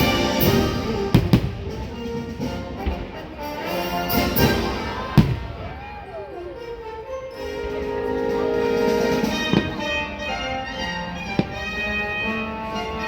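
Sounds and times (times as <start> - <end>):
fireworks bursting with bangs: 0.0 - 3.4, 4.1 - 6.0, 9.0 - 12.8
orchestral music: 0.0 - 13.0.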